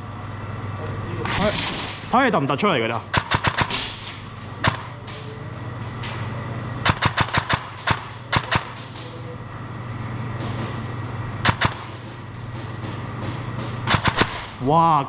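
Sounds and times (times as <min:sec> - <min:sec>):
steady low hum: 0:00.0 - 0:15.0
airsoft guns firing: 0:03.1 - 0:05.3, 0:06.8 - 0:09.2, 0:11.4 - 0:12.0, 0:13.8 - 0:14.7.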